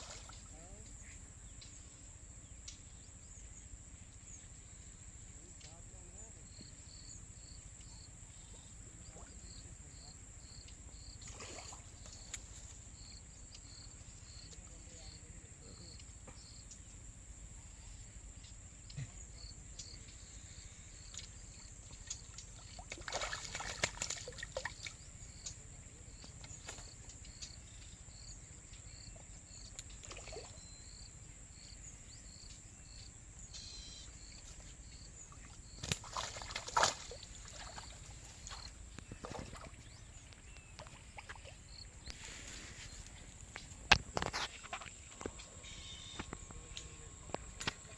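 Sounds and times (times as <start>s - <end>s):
faint chirps: 0.0s - 47.9s
insect drone: 0.0s - 47.9s
water splashing: 22.8s - 24.9s, 35.4s - 39.9s.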